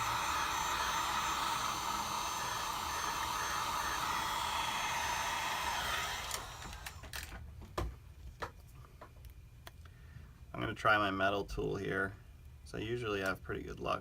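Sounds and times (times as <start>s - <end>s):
hot-air blower running: 0.0s - 7.2s.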